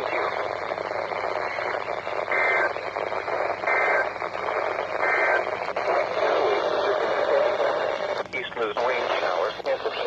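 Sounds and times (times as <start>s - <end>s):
radio static: 0.0s - 10.0s
two-tone data chirps: 5.0s - 5.5s.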